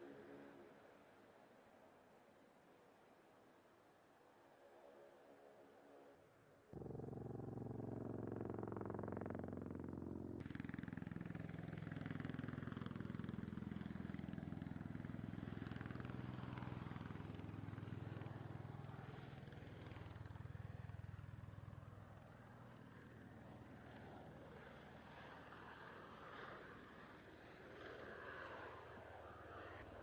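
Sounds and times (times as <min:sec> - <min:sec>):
tiltrotor aircraft rotors humming: 0:06.7 - 0:30.0.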